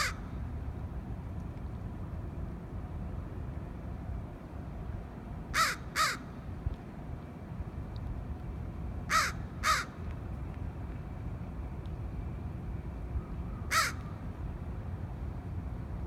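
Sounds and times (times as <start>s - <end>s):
crow cawing: 0.0s - 0.2s, 5.6s - 6.2s, 9.1s - 9.9s, 13.7s - 14.0s.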